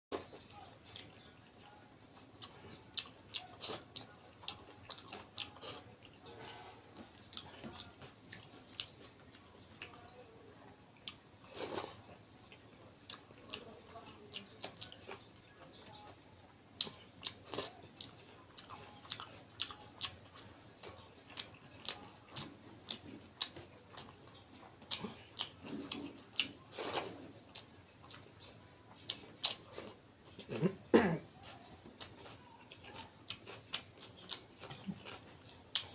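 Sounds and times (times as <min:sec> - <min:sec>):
person chewing and smacking: 0:02.2 - 0:06.3, 0:06.9 - 0:10.2, 0:11.0 - 0:16.2, 0:16.8 - 0:30.6, 0:31.4 - 0:35.9.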